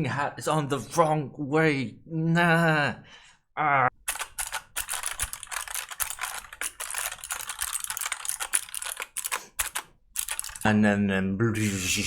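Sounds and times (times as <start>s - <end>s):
fast mechanical keyboard typing: 4.1s - 10.7s
brief vocal sound: 11.6s - 12.0s.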